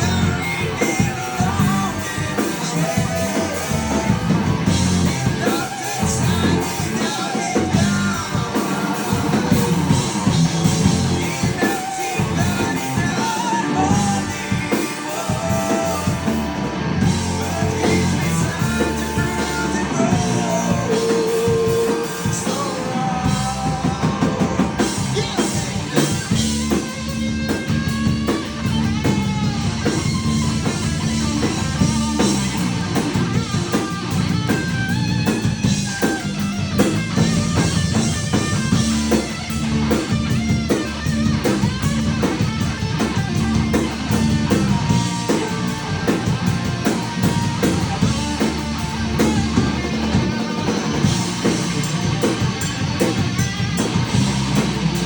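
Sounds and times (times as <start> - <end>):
man singing: 0.0 - 27.0
heavy metal band playing: 0.0 - 55.0.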